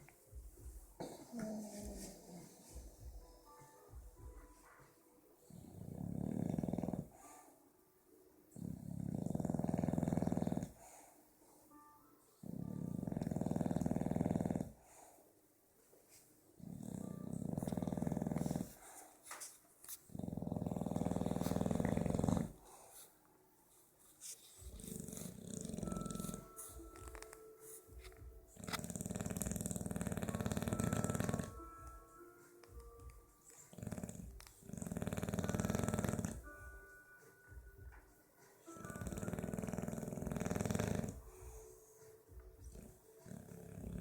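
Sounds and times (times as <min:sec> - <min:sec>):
dog snoring: 0:01.0 - 0:03.0, 0:05.5 - 0:07.5, 0:08.5 - 0:11.1, 0:12.4 - 0:15.1, 0:16.6 - 0:19.1, 0:20.1 - 0:23.0, 0:24.7 - 0:27.4, 0:28.5 - 0:31.8, 0:33.4 - 0:36.6, 0:38.7 - 0:41.8, 0:42.6 - 0:44.0.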